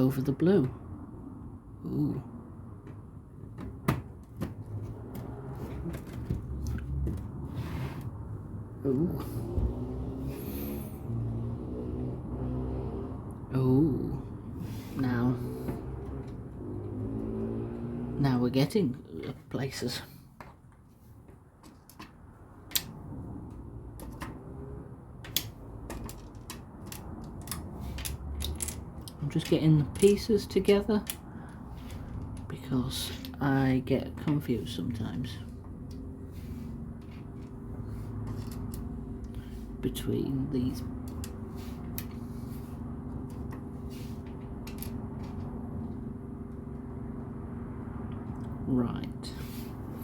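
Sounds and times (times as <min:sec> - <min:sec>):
plastic building bricks clicking: 0:25.3 - 0:30.2.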